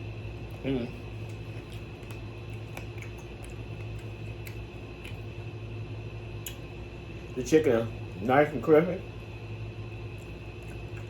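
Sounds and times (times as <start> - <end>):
chewing crispy food: 0.0 - 5.7, 9.8 - 11.0
steady low hum: 0.0 - 11.0.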